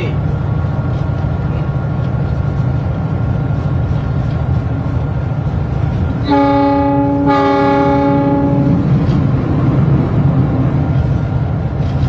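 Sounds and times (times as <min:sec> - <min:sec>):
locomotive engine rumble: 0:00.0 - 0:12.0
locomotive horn blast: 0:06.2 - 0:09.0.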